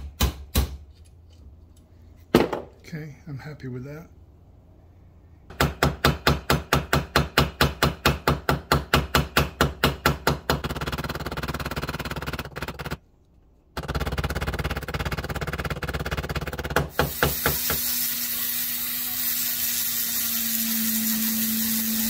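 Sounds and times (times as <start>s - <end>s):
power tool whirring: 16.9s - 22.0s.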